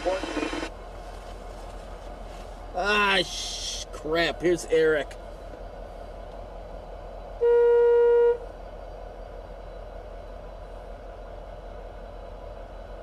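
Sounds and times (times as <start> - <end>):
vehicle horn honk: 7.4 - 8.4.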